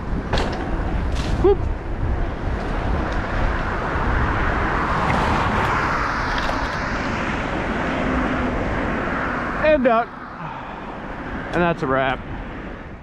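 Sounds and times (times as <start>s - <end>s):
bike tyres rumbling on dirt: 0.0s - 7.2s
wind rushing over microphone: 0.0s - 13.0s.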